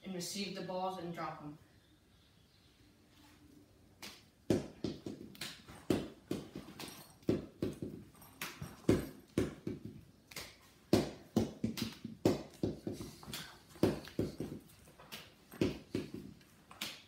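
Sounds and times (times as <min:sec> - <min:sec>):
balls bouncing on floor: 0:04.5 - 0:16.9.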